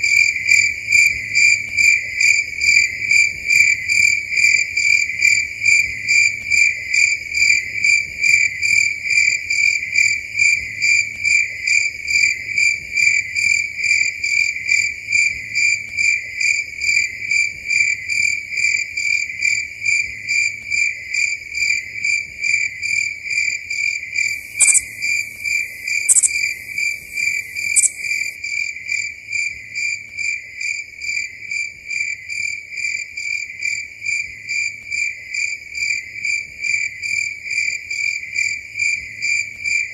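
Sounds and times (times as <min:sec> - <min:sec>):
crickets chirping: 0:24.2 - 0:28.4
sharp high clicks: 0:24.5 - 0:28.3.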